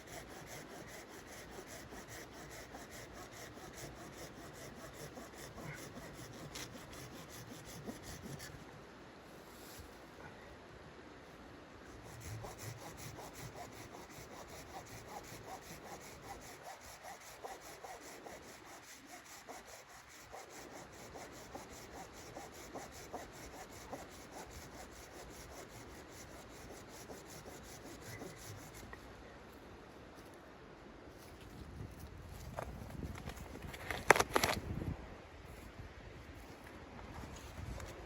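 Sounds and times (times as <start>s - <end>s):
hand saw cutting wood: 0.0s - 8.5s, 12.0s - 28.9s.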